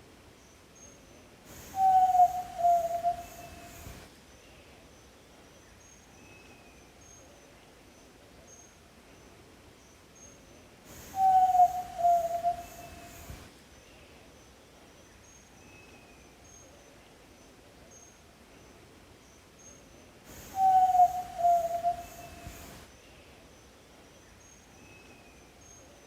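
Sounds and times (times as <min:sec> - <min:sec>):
faint insects chirping: 0:00.0 - 0:26.0
bird hooting whistle: 0:01.6 - 0:04.0, 0:11.0 - 0:13.4, 0:20.4 - 0:22.7.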